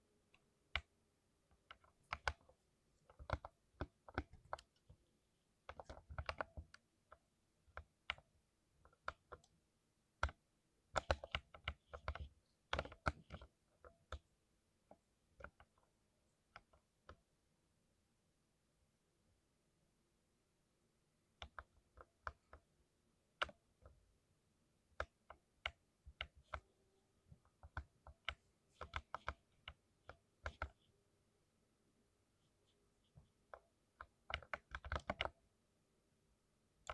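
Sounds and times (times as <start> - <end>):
mechanical keyboard typing: 10.2 - 14.2, 27.6 - 30.8, 33.5 - 35.4.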